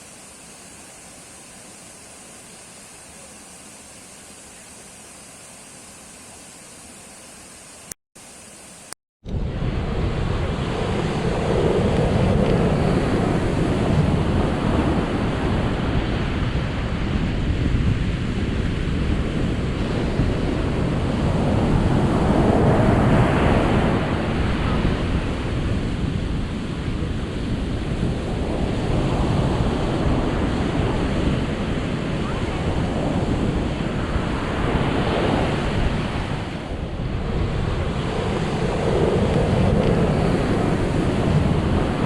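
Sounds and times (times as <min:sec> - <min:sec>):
ocean surf washing in: 0:08.2 - 0:42.0
wind buffeting microphone: 0:09.2 - 0:42.0.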